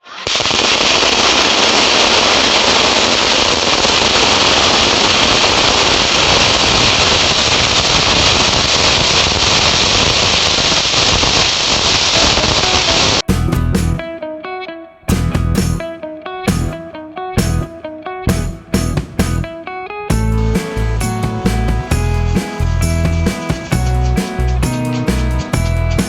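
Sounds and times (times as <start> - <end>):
fireworks crackling hiss: 0.0 - 13.2, 20.1 - 26.0
guitar music: 12.6 - 26.0.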